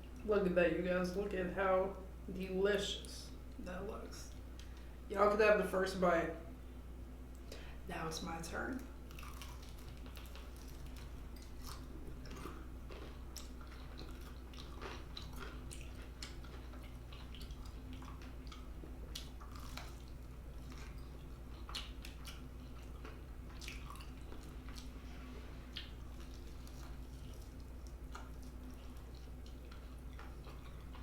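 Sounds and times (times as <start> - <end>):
steady low hum: 0.0 - 31.0
chewing and crunching food: 8.8 - 31.0.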